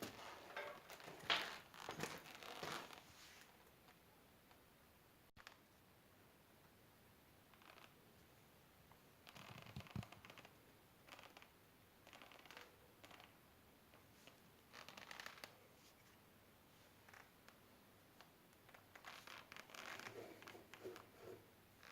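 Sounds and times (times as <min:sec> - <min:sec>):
faint scraping and rustling: 0:00.0 - 0:04.0, 0:09.2 - 0:21.9.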